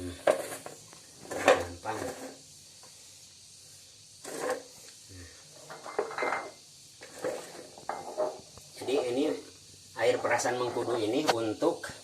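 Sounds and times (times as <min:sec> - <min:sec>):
dishes and glass clinking: 0:05.7 - 0:08.4.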